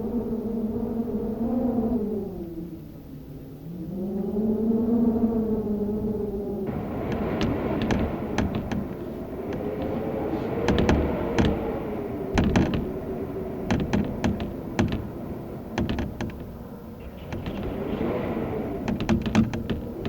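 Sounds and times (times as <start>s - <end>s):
blizzard wind howling: 0.0s - 20.0s
sharp knocks and rattles: 6.7s - 20.0s.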